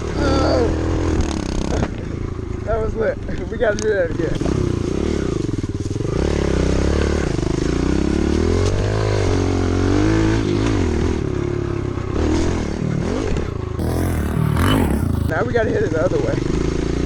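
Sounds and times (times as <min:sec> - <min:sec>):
small motorbike engine revving: 0:13.8 - 0:15.3.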